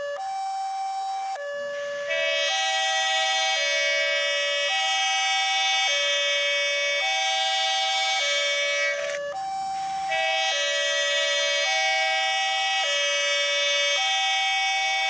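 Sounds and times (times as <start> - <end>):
two-tone hi-lo siren: 0.0 - 15.0.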